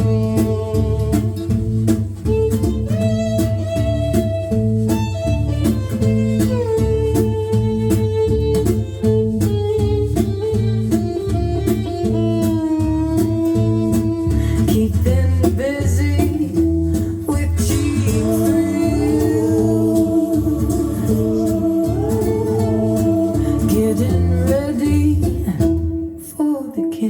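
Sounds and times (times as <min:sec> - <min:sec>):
bass line: 0:00.0 - 0:26.2
drum beat: 0:17.6 - 0:25.9
lead guitar bending notes: 0:17.7 - 0:26.2.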